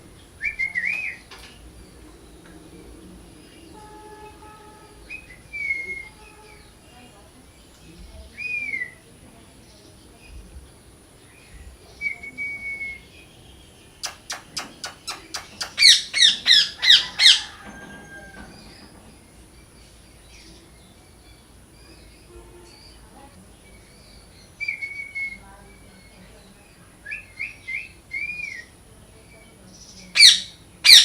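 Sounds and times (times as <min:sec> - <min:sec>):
faint chirps: 0:00.0 - 0:30.8
parrot whistle: 0:05.0 - 0:06.6
parrot clicking calls: 0:14.0 - 0:17.6
parrot squawking: 0:14.0 - 0:17.6, 0:30.2 - 0:31.0.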